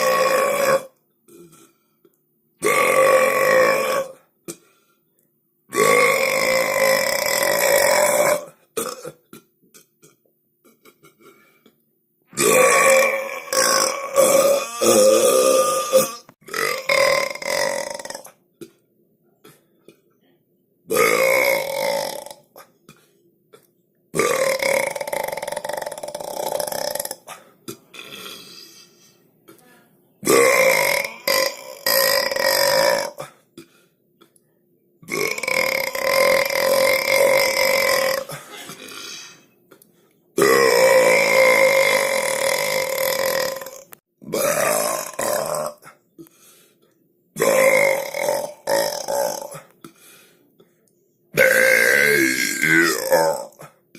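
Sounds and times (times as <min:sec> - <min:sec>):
person belching: 0:00.0 - 0:01.7, 0:02.6 - 0:04.2, 0:05.7 - 0:11.3, 0:12.3 - 0:18.4, 0:20.9 - 0:22.6, 0:23.6 - 0:28.6, 0:30.2 - 0:33.4, 0:35.0 - 0:39.2, 0:40.4 - 0:46.0, 0:47.4 - 0:49.7, 0:51.4 - 0:53.8.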